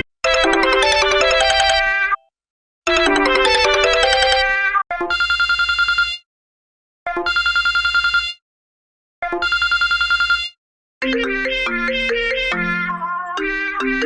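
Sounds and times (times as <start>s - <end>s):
melodic ringtone tune: 0.2s - 2.1s, 2.9s - 4.7s, 11.0s - 14.0s
telephone ringing with pulsing trill: 0.2s - 2.1s, 2.9s - 6.2s, 9.4s - 14.0s.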